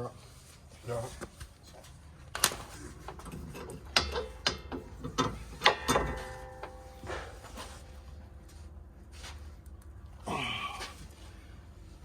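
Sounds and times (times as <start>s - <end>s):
metal tool clicks and knocks: 3.1s - 7.3s.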